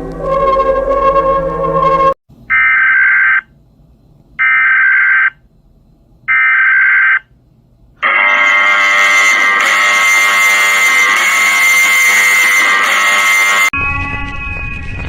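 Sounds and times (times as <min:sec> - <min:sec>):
electronic alarm buzzer: 0:00.2 - 0:03.4, 0:04.4 - 0:05.4, 0:06.3 - 0:07.2, 0:08.0 - 0:14.5.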